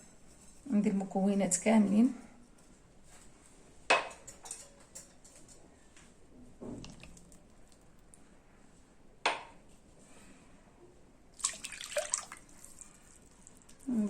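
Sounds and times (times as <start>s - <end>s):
liquid pouring into bowl: 11.4s - 13.9s.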